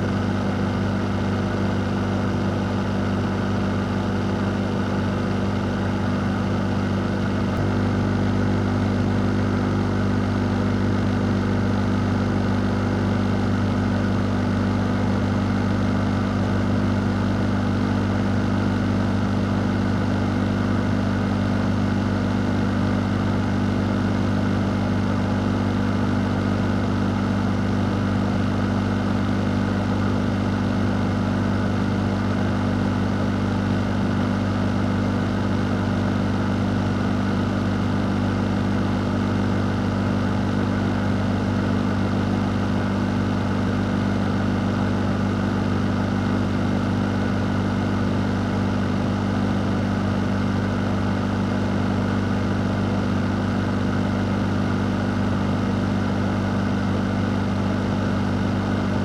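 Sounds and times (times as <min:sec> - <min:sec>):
fan humming: 0:00.0 - 0:16.5.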